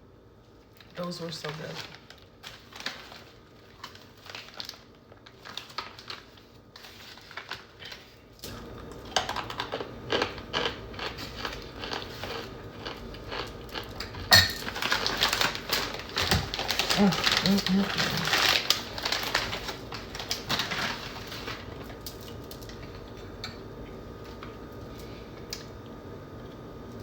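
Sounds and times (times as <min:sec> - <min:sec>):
cornstarch crunching and crackling: 0:00.8 - 0:08.3, 0:09.0 - 0:23.2.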